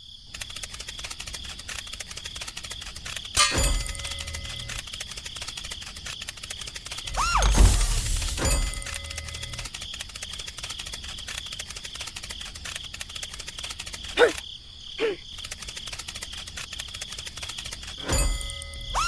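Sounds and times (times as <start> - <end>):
short sharp chirps: 7.1 - 9.0
crickets chirping: 9.7 - 18.0.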